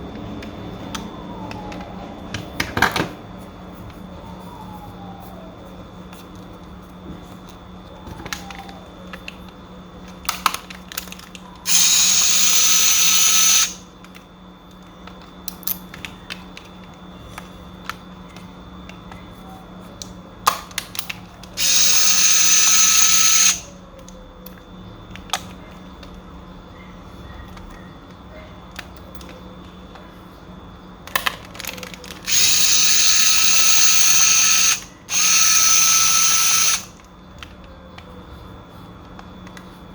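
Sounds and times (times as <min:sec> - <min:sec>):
electric screwdriver whining: 0:11.7 - 0:13.9, 0:21.6 - 0:23.7, 0:32.1 - 0:37.0
small parts clicking and tapping: 0:28.7 - 0:30.1.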